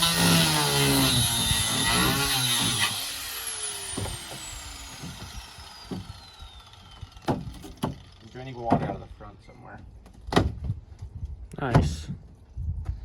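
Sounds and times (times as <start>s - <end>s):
power cutting tool whine: 0.0s - 8.5s.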